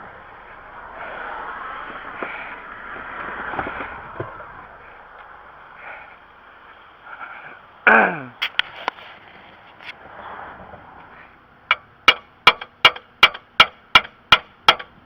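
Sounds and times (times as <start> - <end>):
hammer striking metal: 11.7 - 15.0.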